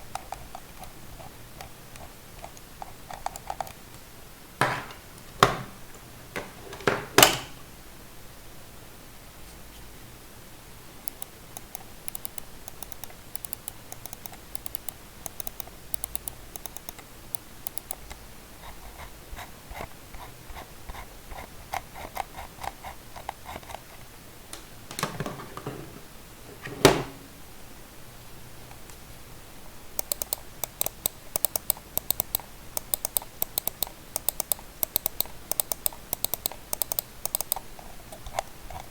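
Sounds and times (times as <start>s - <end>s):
mouse scroll wheel ticking: 0.0s - 3.8s, 11.0s - 23.9s, 30.0s - 38.9s
mouse button clicks: 11.1s - 17.0s, 30.0s - 37.6s.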